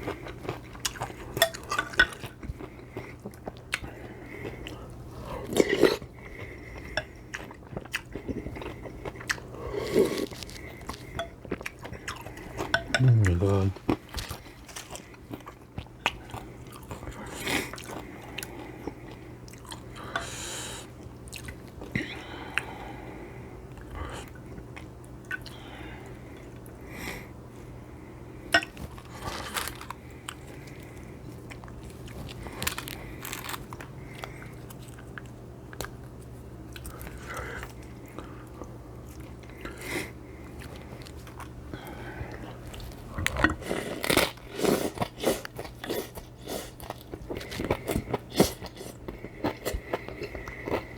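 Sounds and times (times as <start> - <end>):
wet chewing and smacking: 0.0 - 4.8
steady low hum: 0.0 - 44.6.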